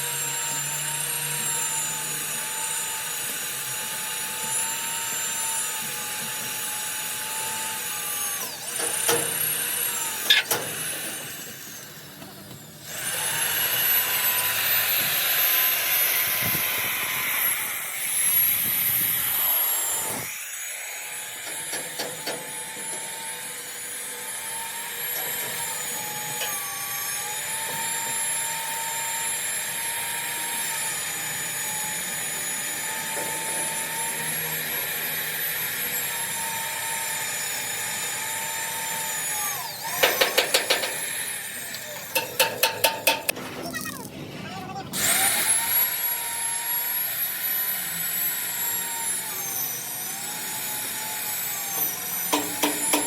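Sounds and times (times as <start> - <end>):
power tool whining: 0.0 - 43.4, 44.9 - 53.0
sharp metal knocks: 40.0 - 41.0, 42.1 - 43.5, 52.3 - 53.0.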